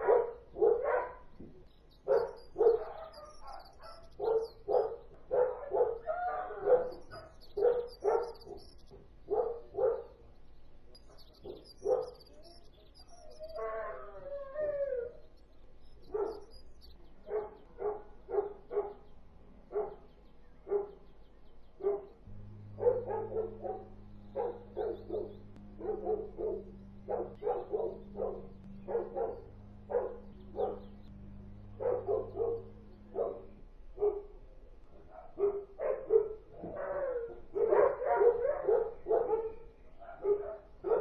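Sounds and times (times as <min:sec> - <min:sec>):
dogs barking: 0:00.0 - 0:10.3, 0:11.0 - 0:15.3, 0:16.0 - 0:21.2, 0:21.8 - 0:41.0
dog howling: 0:02.1 - 0:07.0, 0:13.2 - 0:15.3, 0:22.6 - 0:33.6, 0:36.6 - 0:39.4.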